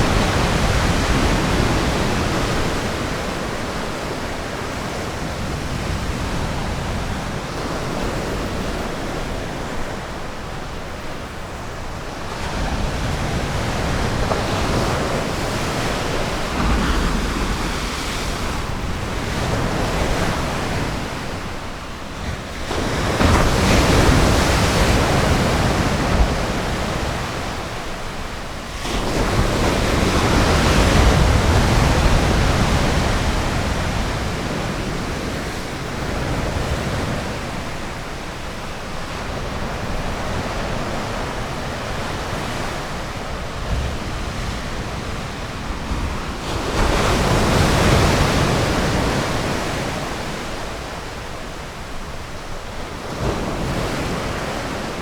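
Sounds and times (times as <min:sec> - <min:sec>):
ocean surf breaking: 0:11.6 - 0:55.0.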